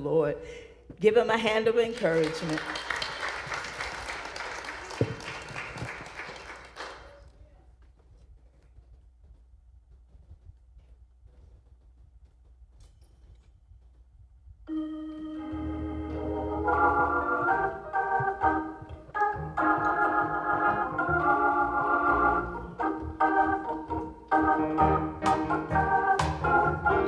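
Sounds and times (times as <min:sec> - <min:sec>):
organ playing sustained chords: 0:14.7 - 0:27.0.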